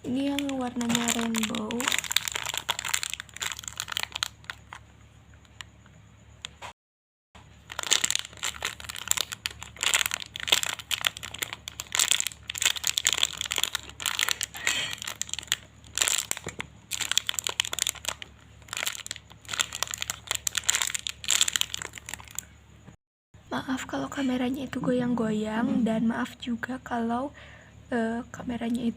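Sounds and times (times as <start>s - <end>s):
foam toy crinkling and rustling: 0.0s - 4.9s, 7.4s - 22.5s.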